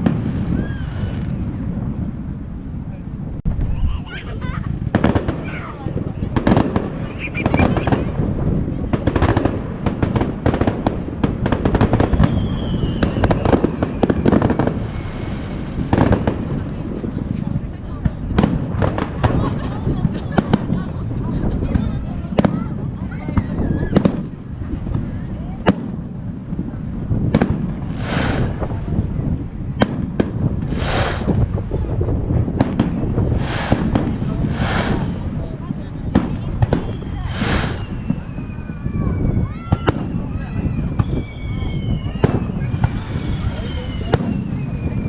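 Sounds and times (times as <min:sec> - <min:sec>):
firework falling whistle: 0:00.0 - 0:01.4, 0:07.0 - 0:08.1, 0:11.8 - 0:16.3, 0:28.0 - 0:28.8, 0:30.7 - 0:31.5, 0:33.1 - 0:35.2, 0:36.7 - 0:45.0
low rumble: 0:00.0 - 0:22.4, 0:24.3 - 0:40.2
fireworks bursting and crackling: 0:00.0 - 0:45.0
firework shells bursting: 0:27.3 - 0:29.0, 0:29.8 - 0:38.8.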